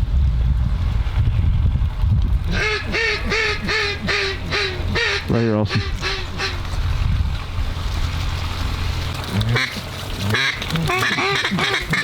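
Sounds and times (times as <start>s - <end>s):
low rumble: 0.0s - 10.8s
duck quacking: 2.5s - 6.6s, 9.5s - 12.0s.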